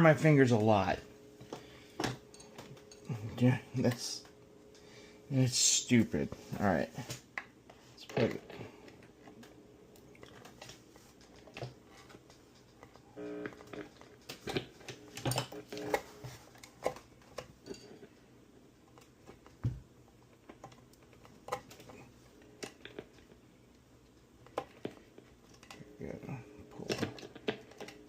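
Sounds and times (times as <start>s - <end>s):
small parts and tools clicking: 8.0s - 18.1s, 18.8s - 28.0s.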